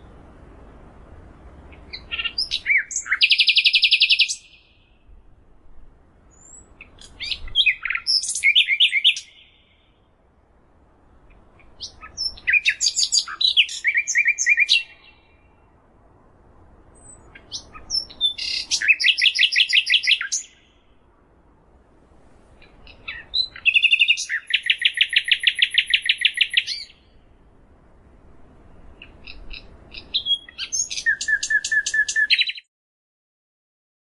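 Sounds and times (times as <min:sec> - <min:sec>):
songbird singing with trill: 0:01.6 - 0:05.2, 0:06.3 - 0:10.1, 0:11.2 - 0:15.8, 0:17.0 - 0:21.0, 0:22.6 - 0:27.2, 0:28.7 - 0:32.7.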